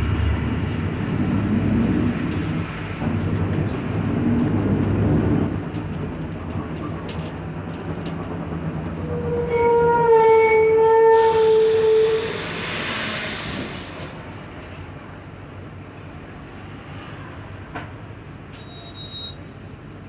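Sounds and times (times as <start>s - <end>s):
bus differential whining: 0.0s - 14.6s
long loud hiss: 11.3s - 14.1s.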